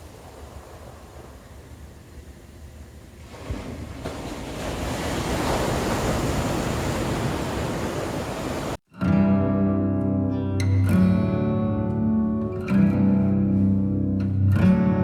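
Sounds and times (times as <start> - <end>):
strummed acoustic guitar music: 8.9 - 15.0.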